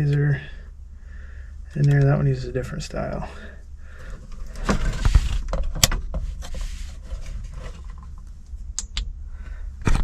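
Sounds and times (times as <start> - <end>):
low steady hum: 0.0 - 10.0
hands rubbing and scraping plastic: 4.1 - 8.5.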